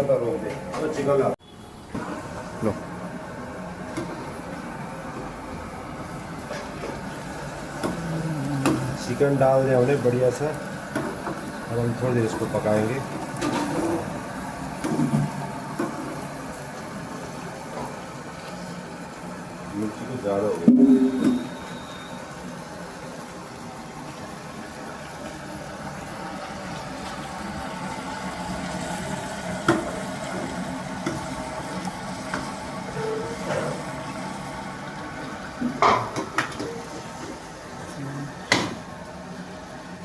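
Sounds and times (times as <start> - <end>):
gravy bubbling and sizzling: 0.0 - 40.0
knocks against pan: 38.5 - 38.8.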